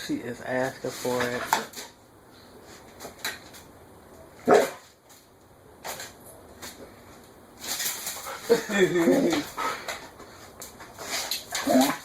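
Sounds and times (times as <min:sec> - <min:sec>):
dog barking: 0:04.4 - 0:04.8.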